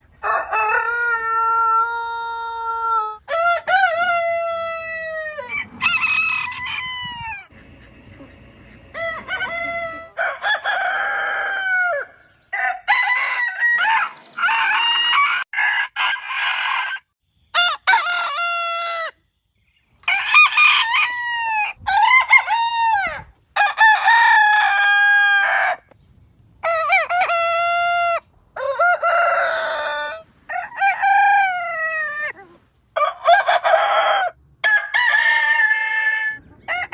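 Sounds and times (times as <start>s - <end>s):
roosters crowing: 0.1s - 19.2s, 20.0s - 26.0s, 26.6s - 36.9s.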